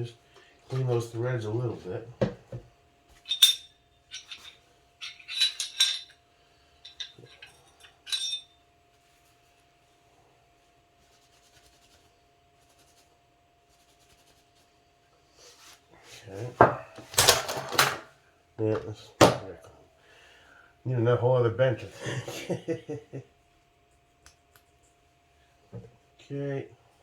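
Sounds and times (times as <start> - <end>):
faint steady hum: 0.0 - 27.0
small objects clinking on workbench: 3.2 - 6.2, 6.8 - 8.5.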